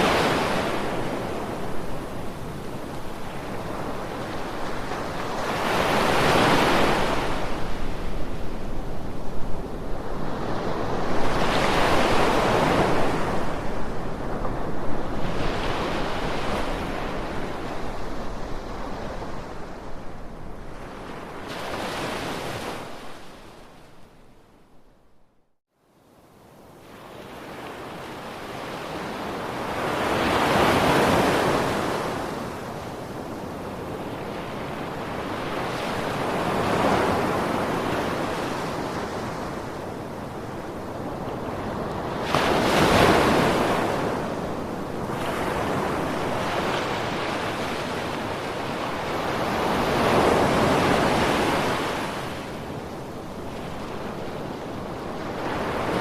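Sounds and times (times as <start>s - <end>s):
ocean waves breaking: 20.6s - 24.0s, 33.4s - 56.0s.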